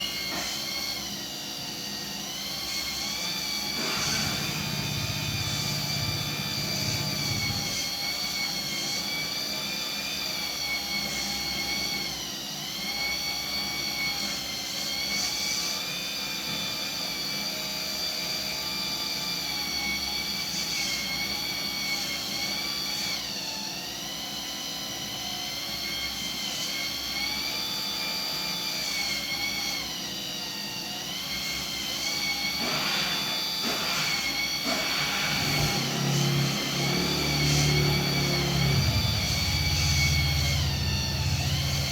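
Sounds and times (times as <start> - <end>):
small electric motors whining: 0.0 - 41.9.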